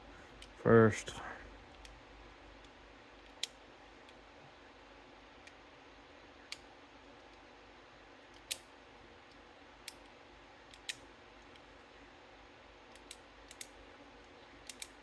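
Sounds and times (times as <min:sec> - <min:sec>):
faint metal clicks of lock picking: 0:12.9 - 0:13.7, 0:14.6 - 0:15.0.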